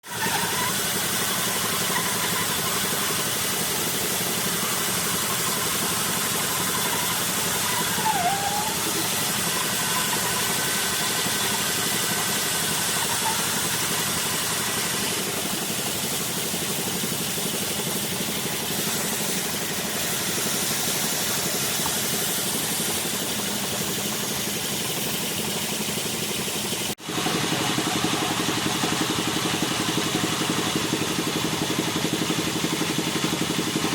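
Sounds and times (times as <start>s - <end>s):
wood lathe running: 0.0s - 33.9s
hiss of turning wood: 0.1s - 33.9s.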